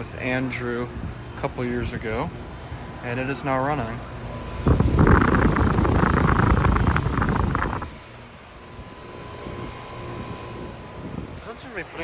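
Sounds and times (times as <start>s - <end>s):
air conditioner hum: 0.0s - 8.1s
air rush buffeting microphone: 4.2s - 8.1s.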